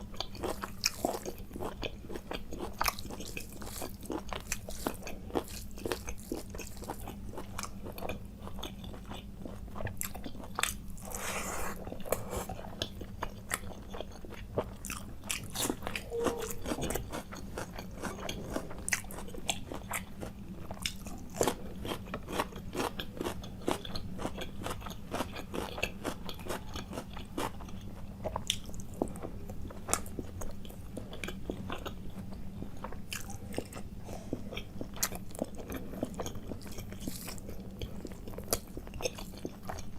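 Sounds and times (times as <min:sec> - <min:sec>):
person chewing crunchy food: 0:00.0 - 0:39.9
low hum: 0:15.7 - 0:18.8.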